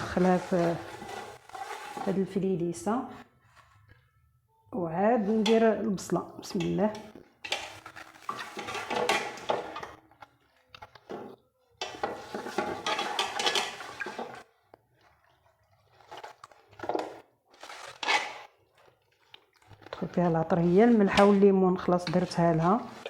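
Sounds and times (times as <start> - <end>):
dishes and utensil clattering: 6.5 - 10.0, 11.1 - 14.4.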